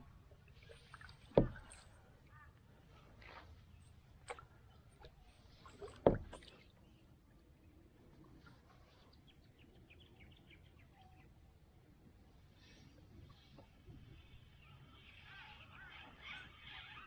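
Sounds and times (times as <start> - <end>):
loud thump on kayak hull: 1.3 - 1.8, 6.0 - 6.5.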